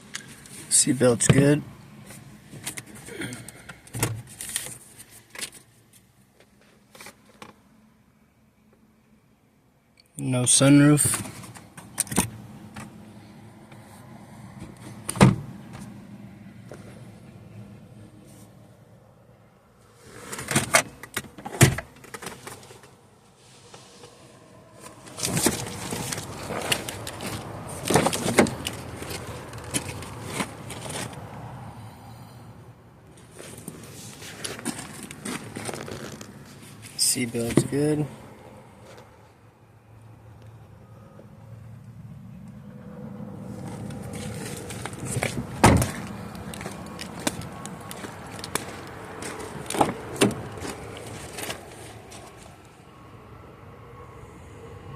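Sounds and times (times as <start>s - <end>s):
car door slamming: 15.1s - 15.5s, 45.4s - 46.0s
seat belt webbing rustling: 24.8s - 31.2s, 33.2s - 37.1s, 43.5s - 52.6s.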